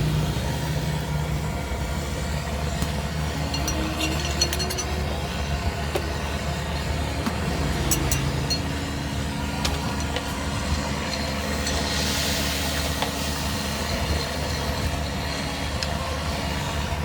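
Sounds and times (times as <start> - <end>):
vehicle engine running: 0.0 - 17.0
high metallic clinks: 3.3 - 5.6.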